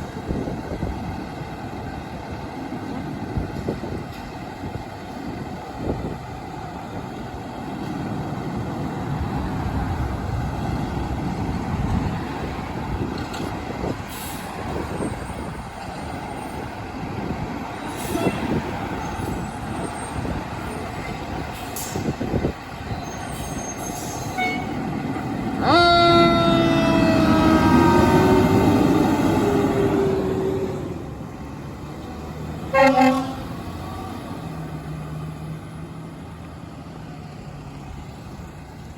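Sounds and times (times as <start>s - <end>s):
diesel engine rumbling: 0.0s - 38.9s
air horn blast: 24.4s - 24.8s, 32.7s - 33.6s.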